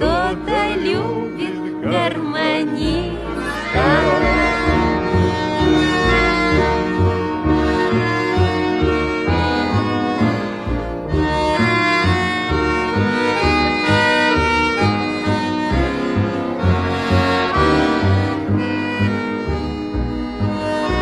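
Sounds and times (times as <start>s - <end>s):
accordion playing: 0.0s - 21.0s.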